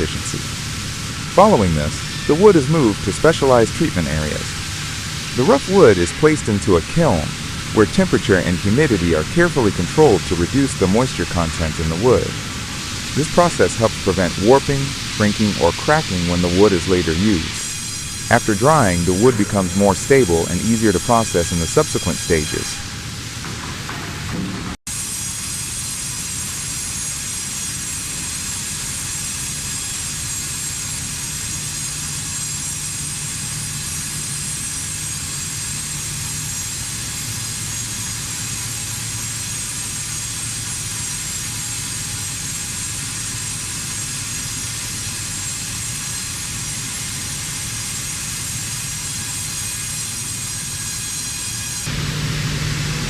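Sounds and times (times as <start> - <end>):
constant hiss: 0.0 - 22.8
machinery drone: 0.0 - 24.8, 26.6 - 53.0.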